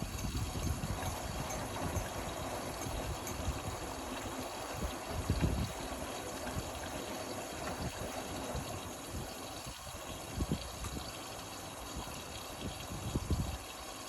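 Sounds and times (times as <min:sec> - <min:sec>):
washing machine water rushing: 0:00.0 - 0:14.0.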